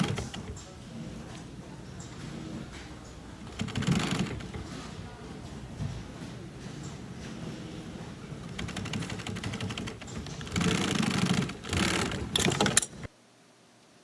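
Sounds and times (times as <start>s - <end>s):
sewing machine stitching: 0.0s - 0.6s, 3.4s - 4.9s, 8.4s - 13.1s.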